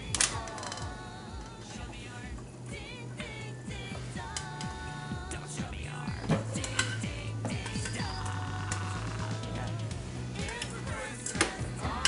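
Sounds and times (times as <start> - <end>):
song with repeating bass line: 2.8 - 12.0.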